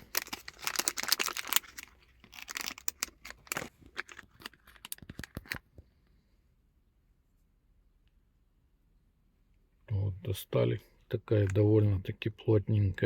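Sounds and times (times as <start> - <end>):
plastic packaging crinkling: 0.0 - 5.7.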